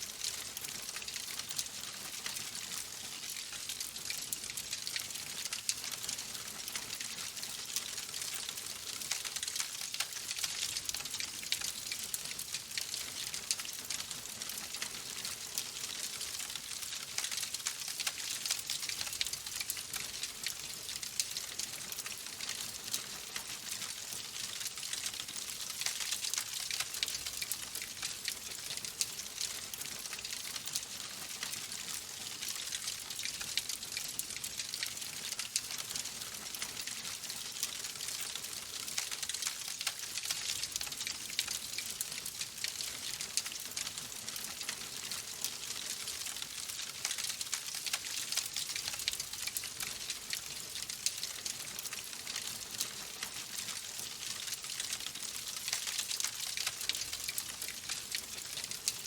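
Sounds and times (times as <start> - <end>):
log fire crackling: 0.1 - 12.1, 14.5 - 43.8.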